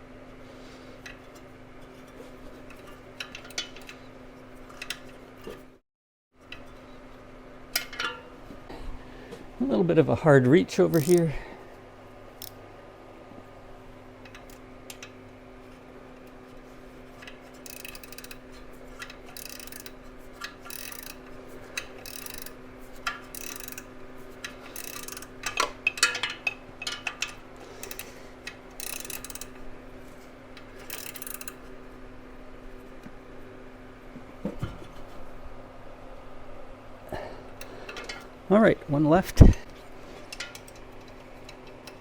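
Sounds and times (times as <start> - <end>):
ratcheting wrench strokes: 10.9 - 11.3, 17.2 - 29.6, 30.6 - 31.6.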